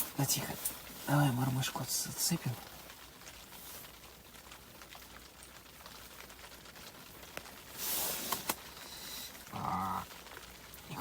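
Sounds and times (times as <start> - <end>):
short rustling hiss: 7.6 - 9.4.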